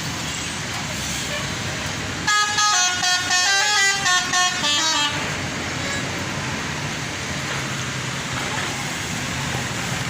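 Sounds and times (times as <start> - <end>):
steady background noise: 0.0 - 10.0
multi-tone bus horn melody: 2.2 - 6.1.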